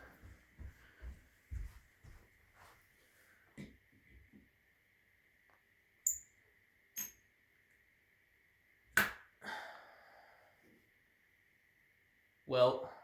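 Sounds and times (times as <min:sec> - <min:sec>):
faint high whine: 0:02.5 - 0:08.9, 0:09.5 - 0:13.0.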